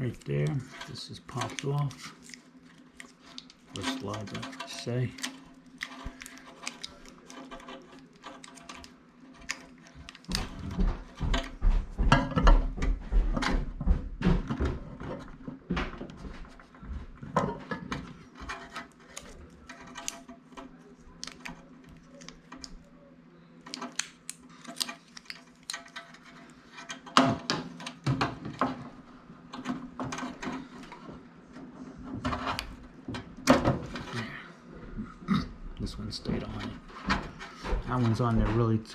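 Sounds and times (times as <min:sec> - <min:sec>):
small parts clicking and knocking: 0:03.0 - 0:11.6, 0:17.6 - 0:22.8, 0:23.6 - 0:28.8.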